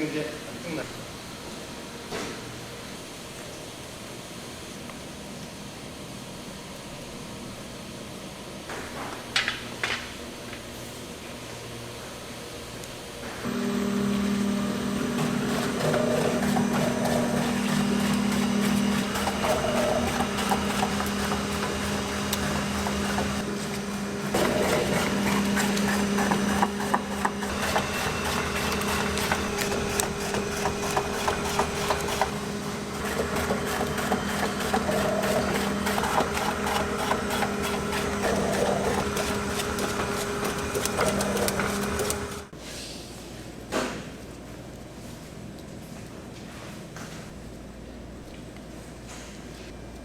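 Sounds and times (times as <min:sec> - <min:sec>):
factory machinery humming: 0:11.5 - 0:42.6.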